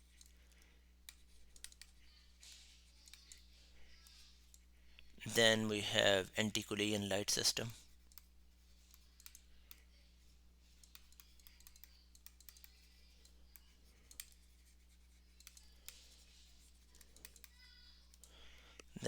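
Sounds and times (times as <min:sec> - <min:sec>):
computer keyboard clicks: 0:00.0 - 0:02.0, 0:08.1 - 0:09.8, 0:10.8 - 0:14.5, 0:15.4 - 0:16.2, 0:16.9 - 0:18.9
low electrical hum: 0:00.0 - 0:19.0.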